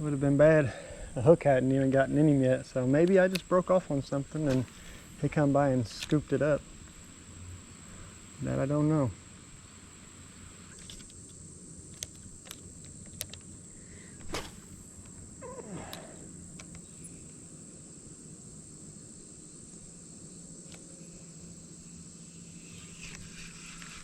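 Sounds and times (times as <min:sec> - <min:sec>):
sharp clicks: 0:03.0 - 0:03.5, 0:11.9 - 0:13.6
high-pitched insect drone: 0:15.1 - 0:24.0.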